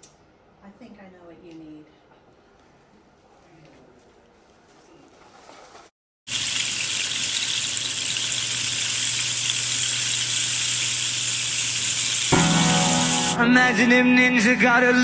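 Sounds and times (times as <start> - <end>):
rain stick beads pouring: 6.3 - 13.4.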